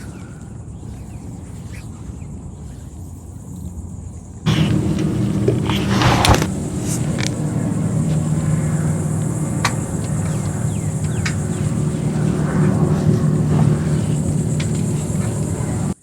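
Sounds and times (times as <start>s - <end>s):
faint chirps: 0.0s - 16.0s
high insect-like buzz: 0.0s - 16.0s
motor humming: 4.3s - 16.0s
sharp ticks: 4.5s - 16.0s.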